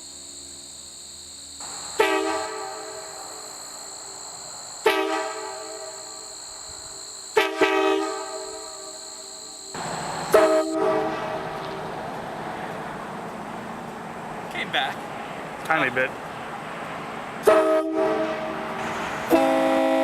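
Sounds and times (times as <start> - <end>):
multi-chime air horn blasts: 1.6 - 11.4, 19.3 - 20.0.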